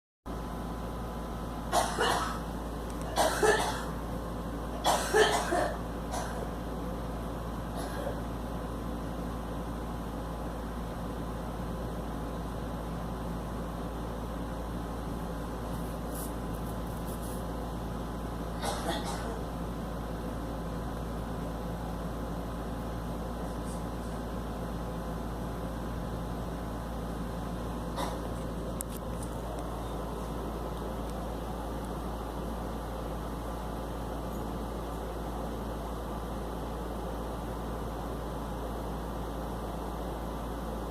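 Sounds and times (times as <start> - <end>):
low background hum: 0.3 - 40.9
girl coughing: 1.7 - 2.5, 3.1 - 4.0, 4.8 - 6.5, 7.8 - 8.2, 18.6 - 19.4, 28.0 - 28.3.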